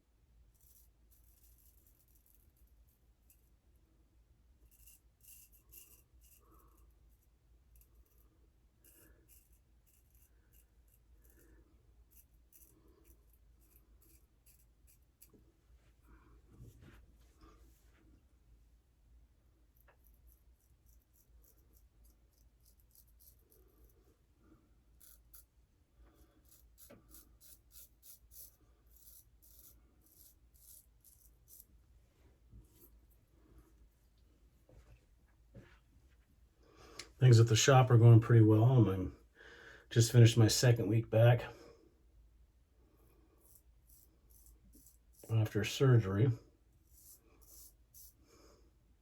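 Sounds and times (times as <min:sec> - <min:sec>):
razor scraping through whiskers: 0:00.5 - 0:03.5, 0:04.6 - 0:15.4, 0:19.8 - 0:24.1, 0:24.9 - 0:31.8, 0:43.4 - 0:45.3, 0:46.8 - 0:48.2.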